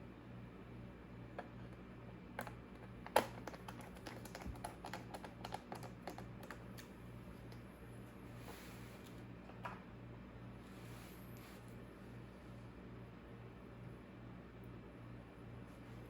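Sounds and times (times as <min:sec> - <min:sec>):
keyboard typing: 0:03.2 - 0:06.6.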